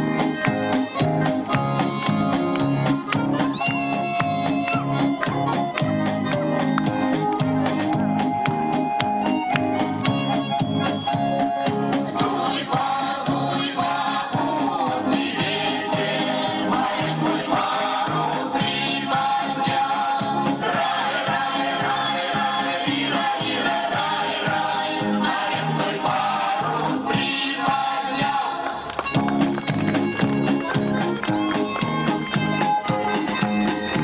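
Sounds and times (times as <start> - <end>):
group of voices singing: 11.9 - 29.0.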